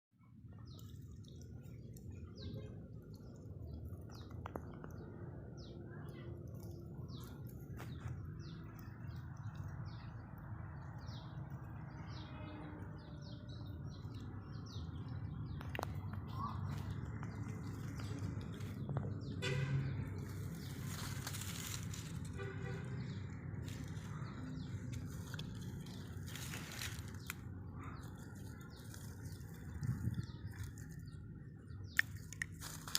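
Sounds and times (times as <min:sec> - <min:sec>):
low outdoor rumble: 0:00.2 - 0:32.9.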